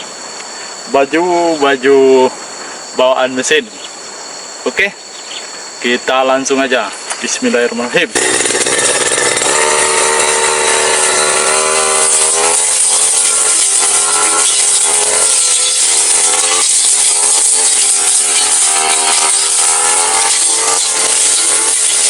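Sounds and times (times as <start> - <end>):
brush cutter engine: 8.1 - 22.0.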